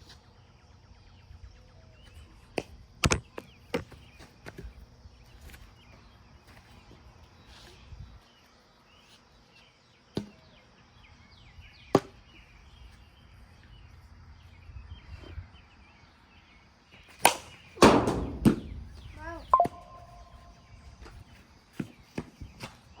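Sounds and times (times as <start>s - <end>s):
birds chirping faintly: 0.0s - 23.0s
plastic bat hitting ball: 17.2s - 18.9s.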